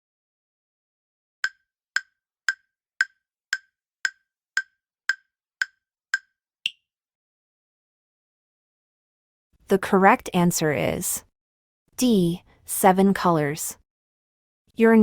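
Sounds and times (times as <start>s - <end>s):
timer ticking: 1.4s - 6.8s.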